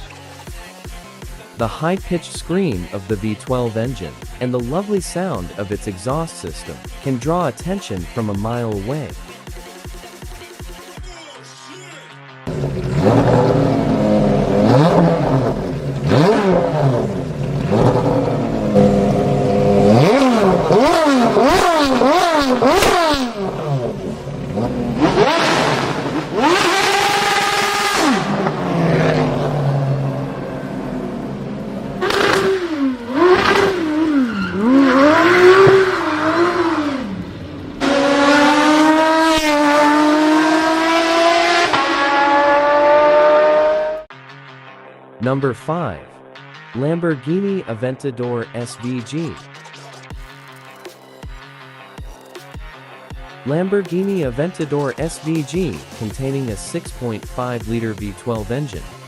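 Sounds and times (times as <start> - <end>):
car engine revving: 12.5 - 44.1.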